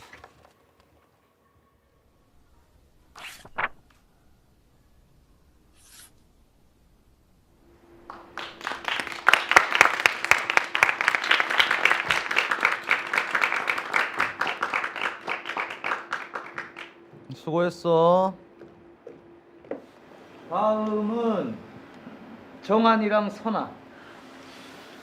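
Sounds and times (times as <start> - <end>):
audience applause: 8.0 - 17.0.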